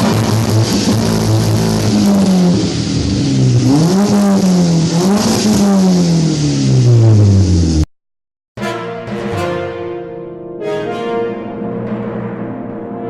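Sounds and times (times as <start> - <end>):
sports car engine accelerating: 0.0 - 7.9.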